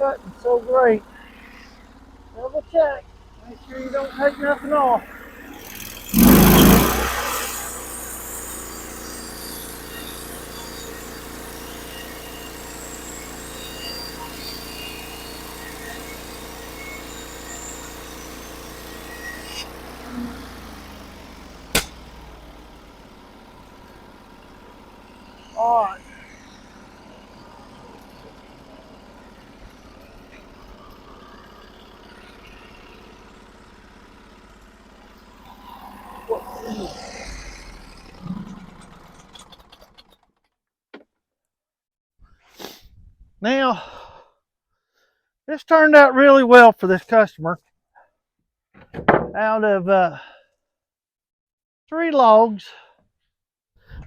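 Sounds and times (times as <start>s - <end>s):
saw cutting through log: 0.0s - 40.2s
sawmill engine running: 0.0s - 40.2s
sharp knock: 21.8s - 22.0s.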